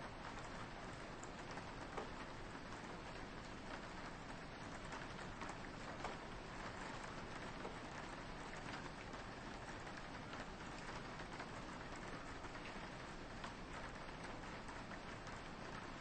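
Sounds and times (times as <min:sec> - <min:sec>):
rain pattering on a window: 0:00.0 - 0:16.0.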